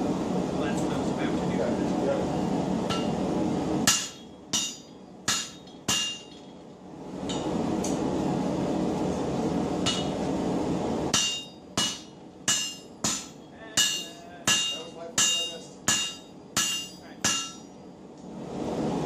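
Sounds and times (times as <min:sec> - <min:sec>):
hammer striking hot steel on anvil: 0:02.9 - 0:03.2, 0:03.8 - 0:06.6, 0:07.2 - 0:08.0, 0:09.8 - 0:10.3, 0:11.1 - 0:17.8.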